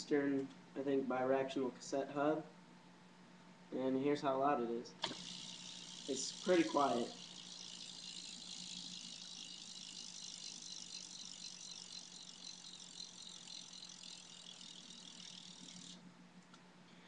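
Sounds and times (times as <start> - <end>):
bike hub freewheel clicking: 5.0 - 16.0.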